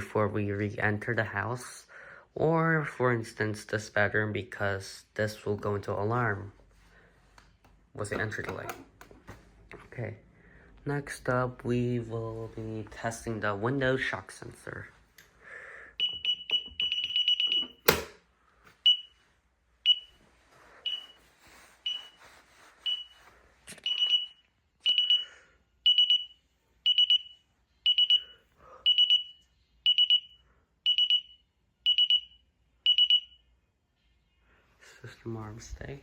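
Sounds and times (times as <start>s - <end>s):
alarm panel beeping: 16.0s - 18.1s, 19.8s - 20.2s, 23.8s - 33.4s.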